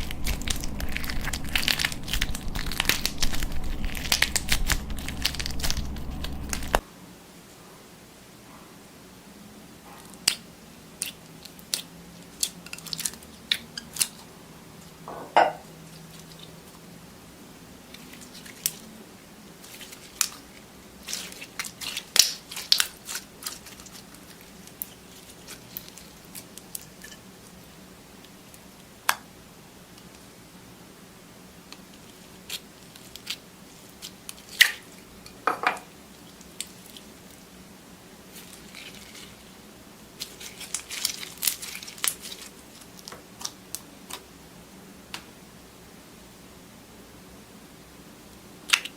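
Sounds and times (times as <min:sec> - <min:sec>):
slime squishing: 0:00.0 - 0:06.8, 0:19.6 - 0:27.2, 0:40.2 - 0:44.2.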